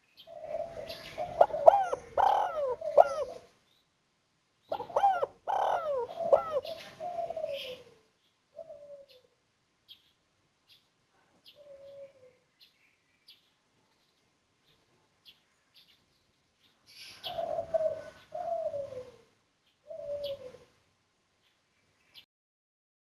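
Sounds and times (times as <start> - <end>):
dove cooing: 0.2 - 3.6, 4.7 - 9.4, 11.5 - 12.4, 17.0 - 20.8.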